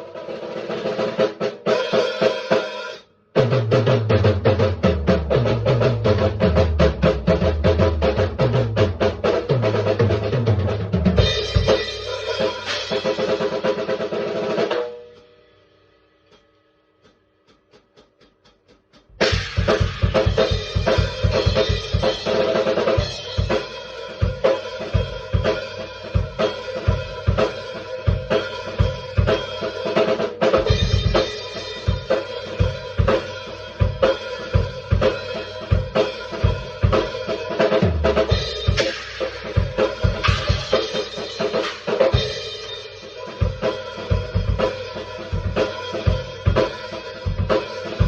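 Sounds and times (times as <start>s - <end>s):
drum beat with kick and snare: 0.0s - 15.4s, 17.0s - 48.0s.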